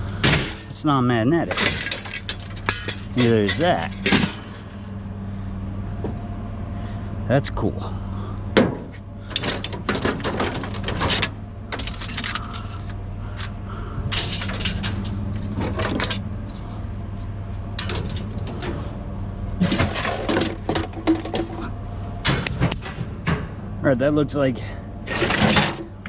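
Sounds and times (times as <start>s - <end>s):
steady low hum: 0.0s - 26.0s
scrap metal clinking: 1.4s - 4.8s, 14.1s - 16.6s.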